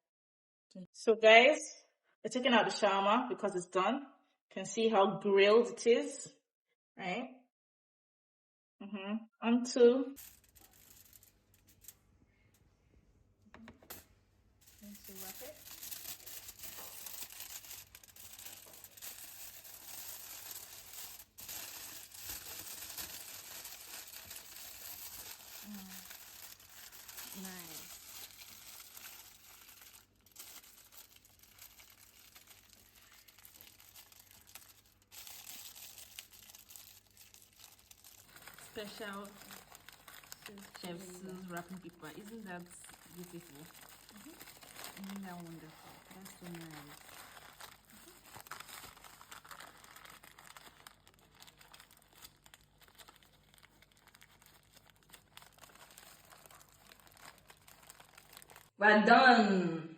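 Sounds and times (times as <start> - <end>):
wrapping paper crinkling: 10.2 - 12.0, 14.6 - 58.8.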